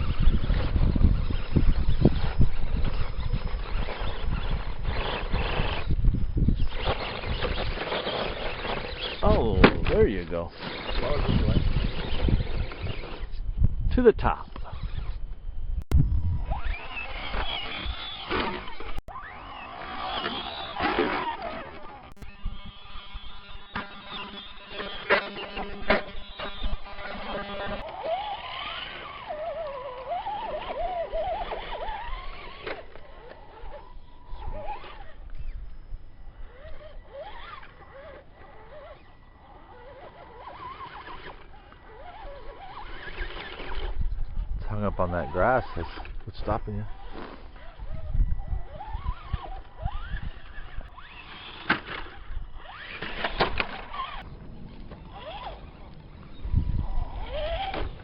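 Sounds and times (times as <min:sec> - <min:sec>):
electric toy motor whining: 0:00.0 - 0:13.4, 0:14.6 - 0:15.3, 0:16.2 - 0:58.0
wind on microphone: 0:00.0 - 0:19.0, 0:22.2 - 0:24.4, 0:41.9 - 0:51.5, 0:52.1 - 0:58.0.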